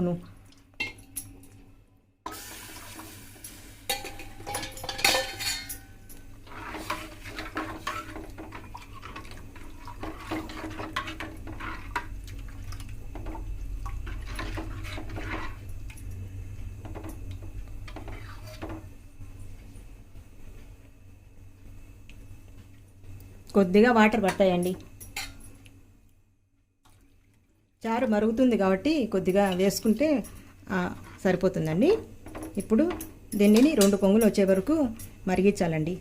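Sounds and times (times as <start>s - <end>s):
steady low hum: 0.0s - 26.8s, 27.6s - 36.0s
steel utensils clinking: 3.4s - 8.1s, 25.0s - 25.5s, 32.2s - 35.2s
spoon scraping in a pan: 6.4s - 12.1s, 14.1s - 15.7s, 17.9s - 18.8s.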